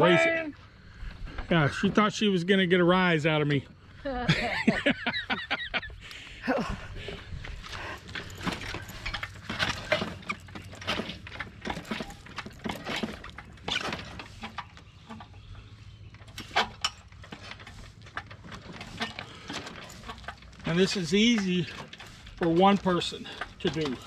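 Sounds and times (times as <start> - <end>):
metal jack clanking and clicking: 7.7 - 15.3, 16.2 - 24.0.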